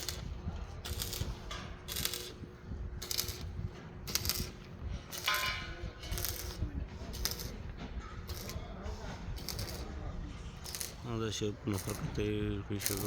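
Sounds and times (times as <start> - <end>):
metallic clinks and scrapes: 4.1 - 7.6.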